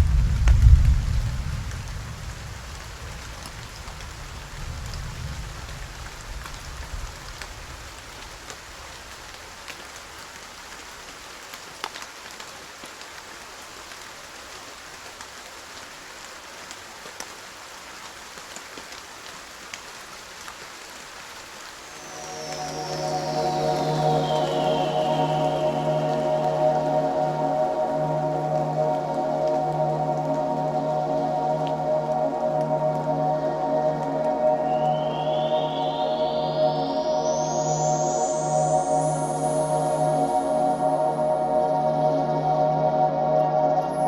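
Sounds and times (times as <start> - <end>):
low rumble: 0.0 - 2.8
raindrops ticking on surfaces: 0.0 - 43.9
steady rain falling: 0.0 - 44.0.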